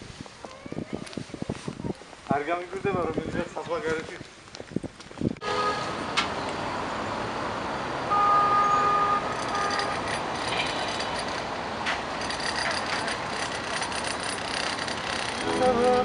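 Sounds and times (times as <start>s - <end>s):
traffic noise: 0.0s - 16.0s
vehicle horn: 5.4s - 6.0s, 8.1s - 10.0s
sharp clatter: 9.3s - 16.0s.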